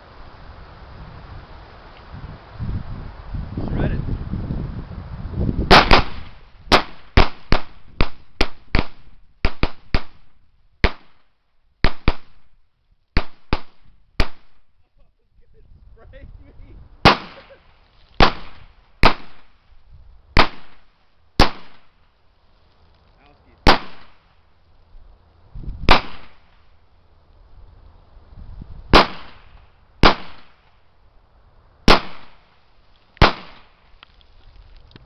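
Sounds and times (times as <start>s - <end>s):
pistol gunshots: 5.7s - 10.2s, 17.1s - 17.5s, 18.2s - 19.5s, 20.4s - 20.8s, 21.4s - 21.9s, 23.7s - 24.2s, 25.9s - 26.4s, 29.0s - 30.6s, 31.9s - 32.4s, 33.2s - 33.7s.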